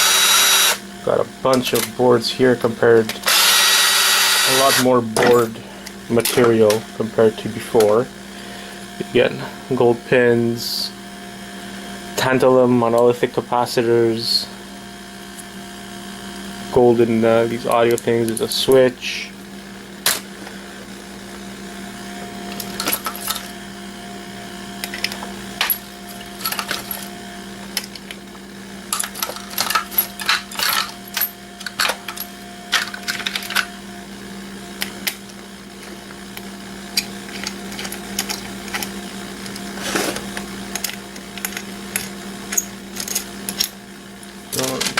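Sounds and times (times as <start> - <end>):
steady low hum: 0.0 - 44.9
metal parts and tools clattering: 22.6 - 23.5, 24.8 - 27.1, 28.9 - 33.7, 37.3 - 38.9, 39.5 - 43.7.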